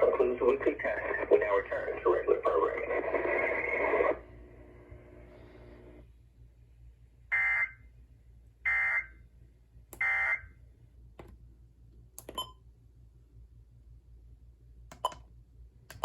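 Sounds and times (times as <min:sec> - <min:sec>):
data burst tones over radio: 0:00.0 - 0:04.2.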